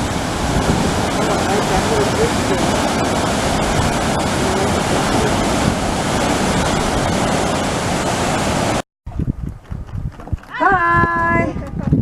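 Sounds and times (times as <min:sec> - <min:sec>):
waterfall rushing: 0:00.0 - 0:08.8.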